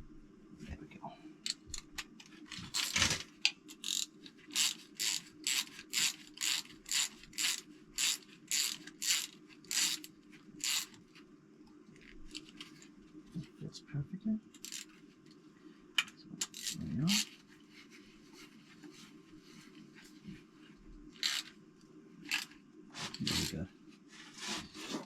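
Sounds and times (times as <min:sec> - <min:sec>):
ratchet wrench clicking: 0:03.7 - 0:11.0, 0:14.6 - 0:14.9, 0:16.4 - 0:17.3, 0:21.2 - 0:21.5, 0:22.3 - 0:22.5.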